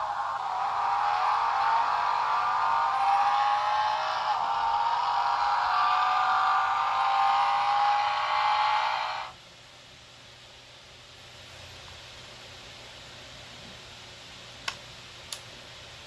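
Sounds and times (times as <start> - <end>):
car engine rising in pitch: 0.0 - 9.3.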